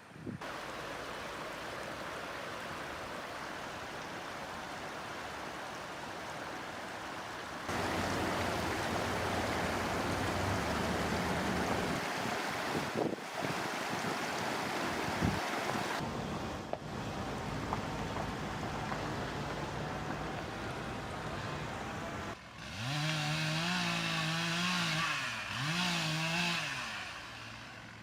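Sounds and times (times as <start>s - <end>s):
rushing floodwater: 0.0s - 22.4s.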